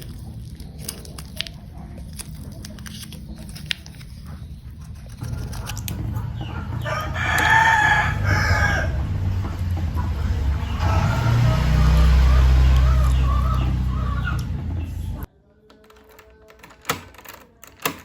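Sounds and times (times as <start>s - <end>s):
rooster crowing: 6.7s - 9.2s, 10.7s - 14.3s.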